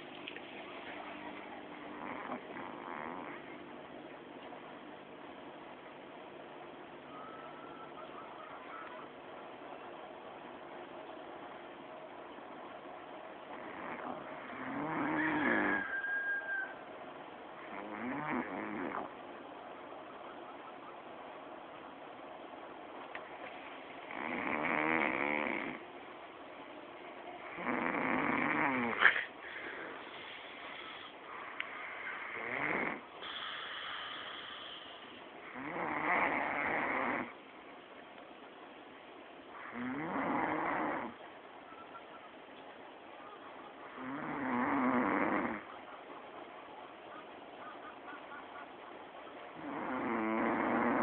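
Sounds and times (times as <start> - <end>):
man snoring loudly: 13.6 - 15.8, 17.7 - 19.1, 24.1 - 25.8, 27.5 - 29.0, 32.2 - 33.0, 35.5 - 37.3, 39.6 - 41.2, 44.0 - 45.6, 49.6 - 51.0
quiet breathing: 28.9 - 35.5.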